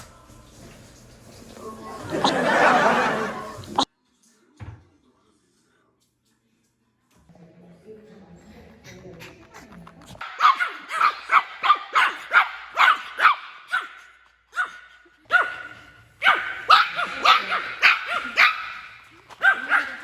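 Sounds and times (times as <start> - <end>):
small dog yapping: 10.2 - 20.0.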